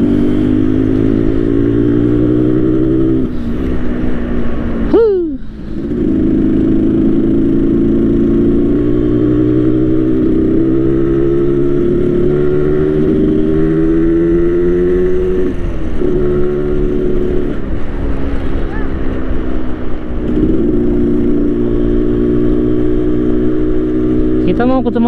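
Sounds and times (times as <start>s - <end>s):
two-stroke motorcycle engine: 5.6s - 14.1s.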